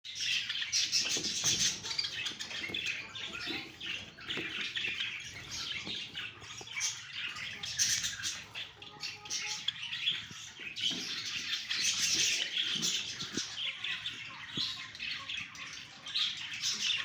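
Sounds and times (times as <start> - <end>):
small birds chirping: 0.0 - 17.0
wings fluttering: 0.7 - 8.7.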